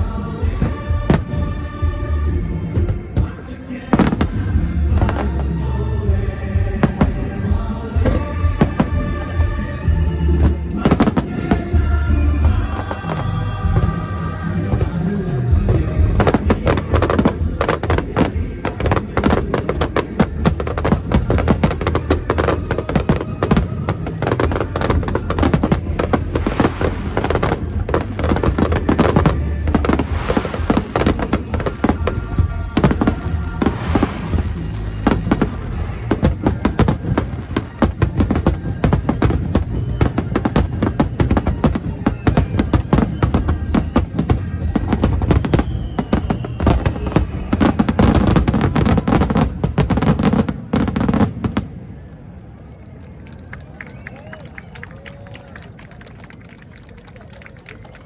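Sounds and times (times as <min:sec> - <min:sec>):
fireworks booming and cracking: 0:00.0 - 0:52.0.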